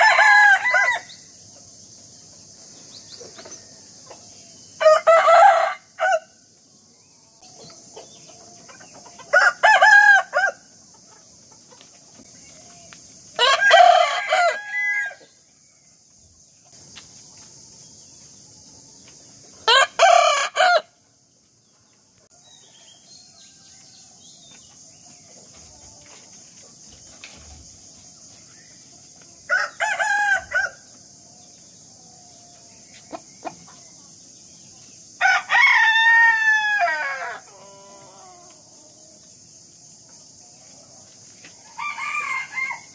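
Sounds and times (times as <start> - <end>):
rooster crowing: 0.0 - 1.2, 4.8 - 6.4, 9.2 - 10.7, 13.4 - 15.4, 19.6 - 21.0, 29.5 - 30.9, 35.2 - 39.0, 41.6 - 42.9.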